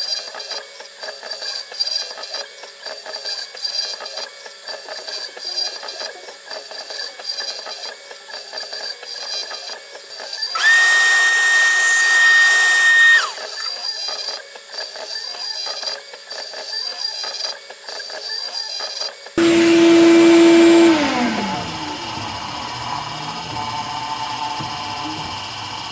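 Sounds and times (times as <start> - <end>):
loud steady whine: 10.6 - 13.7, 19.4 - 25.3.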